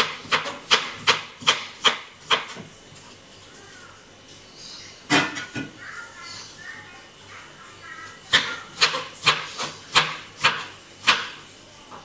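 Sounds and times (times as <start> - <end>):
knife chopping on cutting board: 0.0 - 2.6, 8.3 - 11.4.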